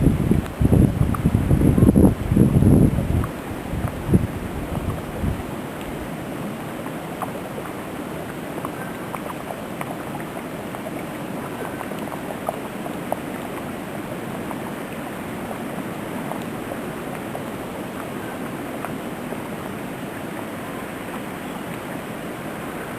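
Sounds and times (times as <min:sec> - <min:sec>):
wind blowing in a snowstorm: 0:00.0 - 0:06.5.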